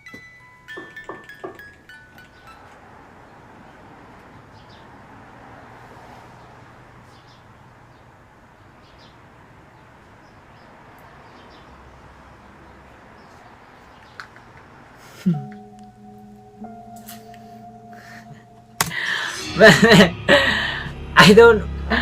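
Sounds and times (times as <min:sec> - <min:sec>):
chime notes ringing: 0:00.0 - 0:03.3, 0:15.3 - 0:22.0.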